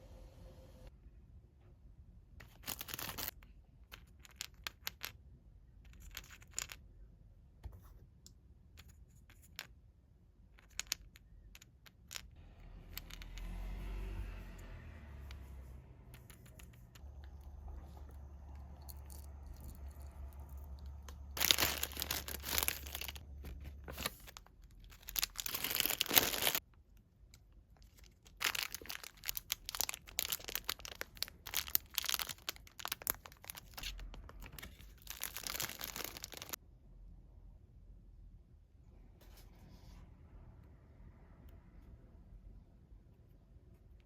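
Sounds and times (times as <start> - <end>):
plastic wrap crinkling and tearing: 21.1 - 26.6, 27.8 - 36.6.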